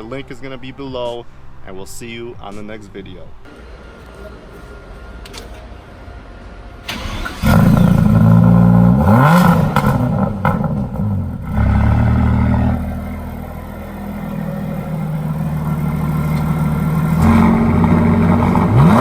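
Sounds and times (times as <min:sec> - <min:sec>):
car engine revving: 0:06.8 - 0:19.0.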